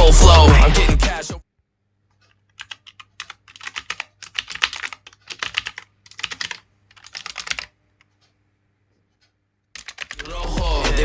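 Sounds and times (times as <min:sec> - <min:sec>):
fast typing on mechanical keyboard: 0:02.5 - 0:07.8, 0:09.8 - 0:10.3.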